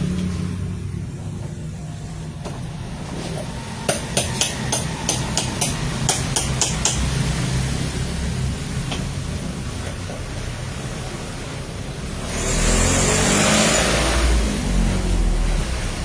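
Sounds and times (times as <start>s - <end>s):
sharp hammer taps: 3.9s - 7.2s.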